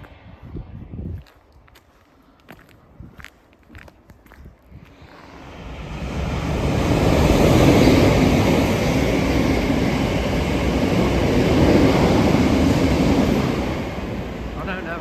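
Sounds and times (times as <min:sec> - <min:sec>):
train passing on rails: 0:04.8 - 0:15.0.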